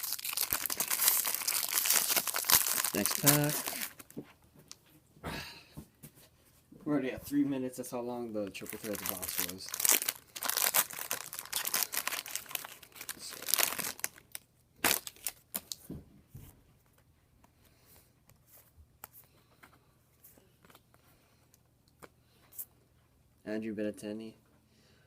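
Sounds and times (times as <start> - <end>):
cards ticking and rustling: 0.0 - 4.1, 8.6 - 14.3
wrapper crinkling and tearing: 0.0 - 4.1, 8.6 - 15.8.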